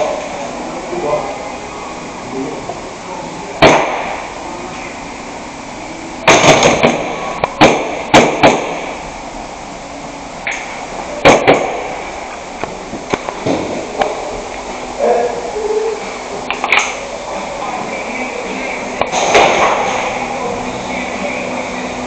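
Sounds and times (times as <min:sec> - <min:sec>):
airsoft gun shots: 0:03.6 - 0:04.2, 0:06.3 - 0:08.9, 0:11.2 - 0:11.8.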